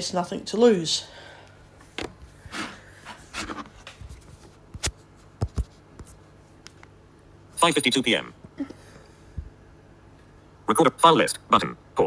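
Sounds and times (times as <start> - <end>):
soft rubbing and rustling: 1.7 - 6.6.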